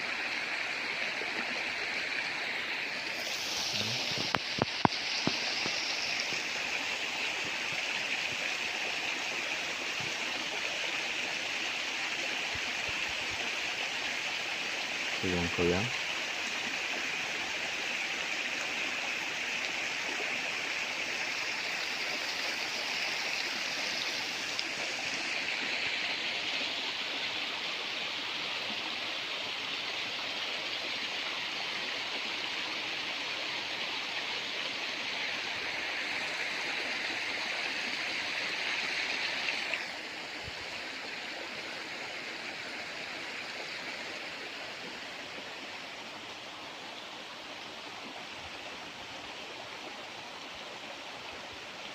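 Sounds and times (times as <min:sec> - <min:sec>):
river rushing: 0:00.0 - 0:15.4.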